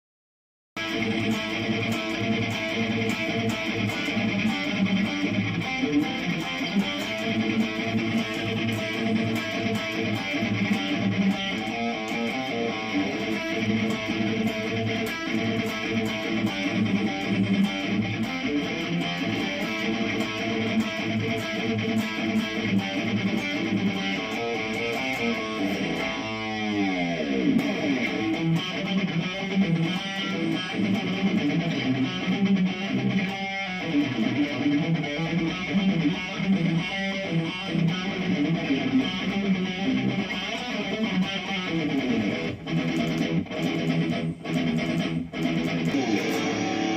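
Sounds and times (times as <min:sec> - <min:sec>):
electric guitar chords and riffs: 0:00.8 - 0:46.9.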